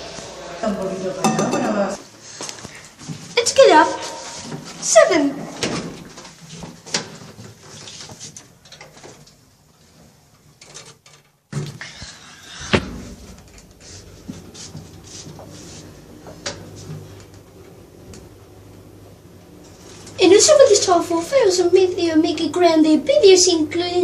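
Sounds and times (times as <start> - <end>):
lift car humming: 11.8 - 20.6
lift clunk: 11.9 - 14.6.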